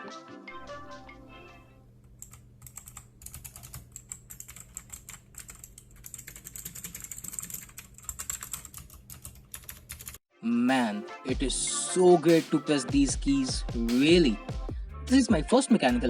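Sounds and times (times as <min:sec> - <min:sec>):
mechanical keyboard typing: 0:02.2 - 0:10.2.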